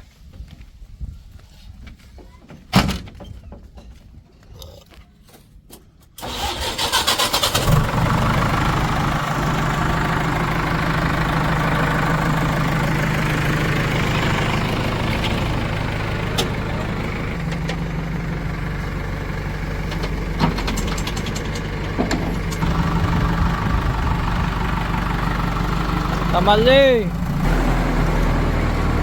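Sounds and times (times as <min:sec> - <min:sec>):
diesel starter cranking: 0:06.1 - 0:27.7
diesel engine idling: 0:06.2 - 0:29.0.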